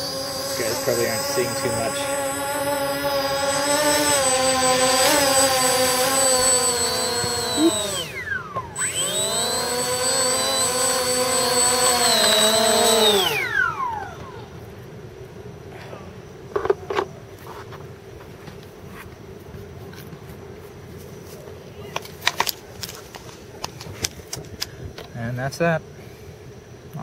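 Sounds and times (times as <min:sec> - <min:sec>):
drone motors and propellers whining: 0:00.0 - 0:15.5.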